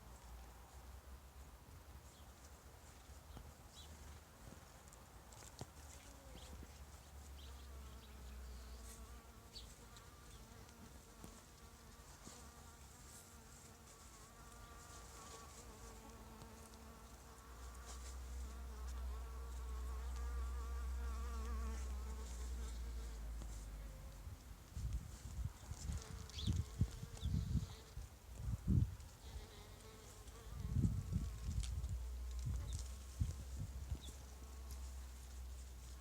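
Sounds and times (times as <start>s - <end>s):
bee buzzing: 7.5s - 24.1s, 29.2s - 31.6s.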